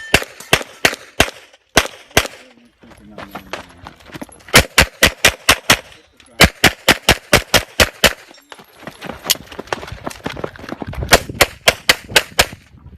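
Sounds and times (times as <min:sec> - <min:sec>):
pistol shots: 0:00.0 - 0:02.5, 0:04.5 - 0:08.3.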